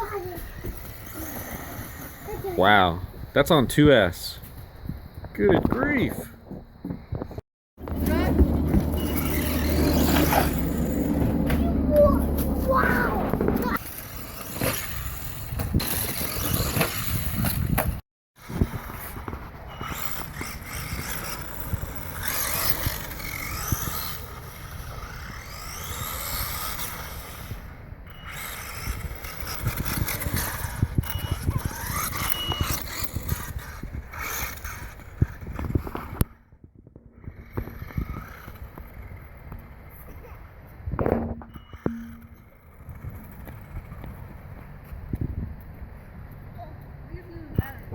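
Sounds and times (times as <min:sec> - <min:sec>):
tyre and ground noise: 0:00.0 - 0:47.9
electric motor whining: 0:07.8 - 0:17.7, 0:18.4 - 0:36.3.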